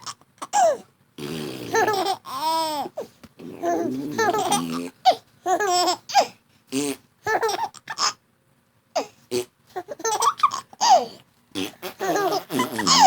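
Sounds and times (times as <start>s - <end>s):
baby laughing: 1.7s - 3.0s, 3.6s - 6.3s, 7.2s - 8.2s, 9.8s - 13.0s.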